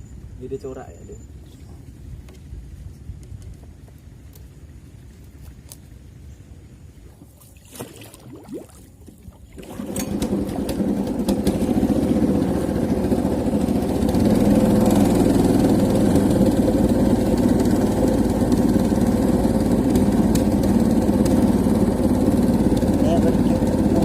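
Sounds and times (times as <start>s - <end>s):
small boat engine running: 9.0s - 24.0s.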